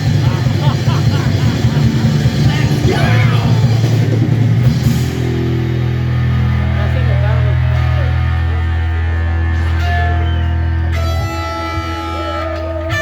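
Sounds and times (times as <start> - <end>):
live rock band playing: 0.0 - 13.0
sustained electric guitar chord: 3.9 - 13.0.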